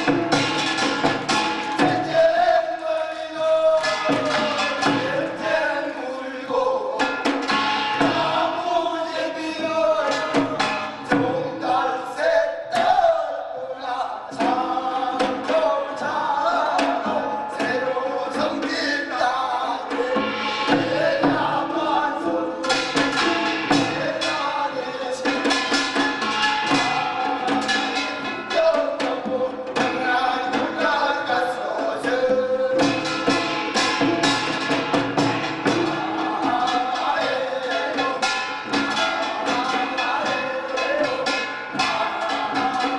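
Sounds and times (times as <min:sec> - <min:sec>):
drum strokes: 0:00.0 - 0:02.6, 0:03.5 - 0:11.9, 0:14.3 - 0:42.9
man chanting: 0:36.4 - 0:42.9.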